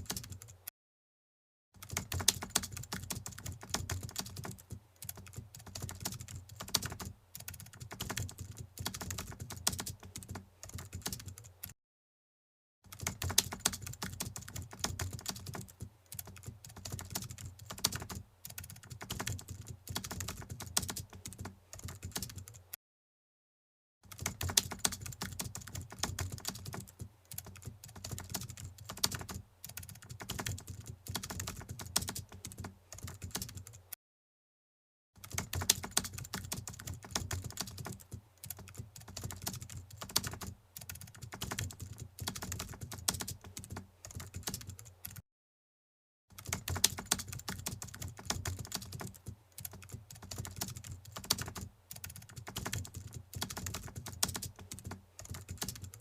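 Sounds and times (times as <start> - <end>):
computer keyboard typing: 0.0 - 0.6, 1.8 - 11.8, 12.9 - 22.6, 24.1 - 33.8, 35.2 - 45.2, 46.3 - 56.0.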